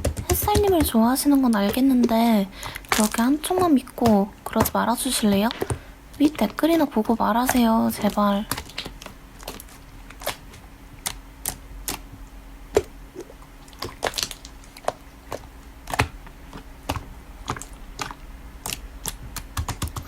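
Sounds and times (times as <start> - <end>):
slime clicking and popping: 13.8 - 20.0.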